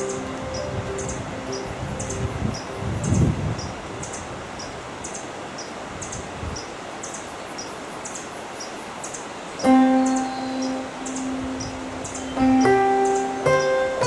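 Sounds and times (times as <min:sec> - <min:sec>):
piano music: 0:00.0 - 0:04.0, 0:09.6 - 0:14.0
steady hiss: 0:00.0 - 0:14.0.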